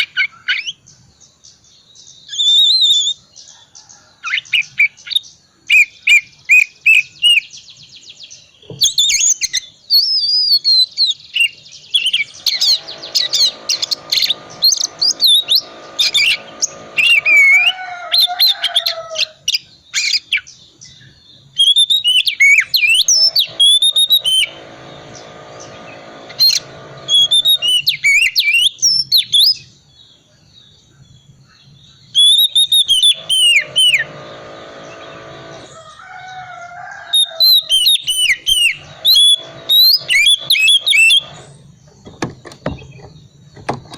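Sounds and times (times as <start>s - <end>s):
bird singing varied song: 0.0s - 43.9s
low buzzing sound: 23.1s - 27.9s.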